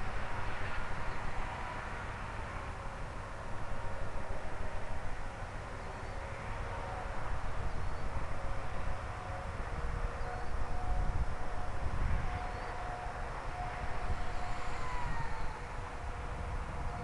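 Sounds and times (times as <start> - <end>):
electric model plane whine: 9.2 - 16.0.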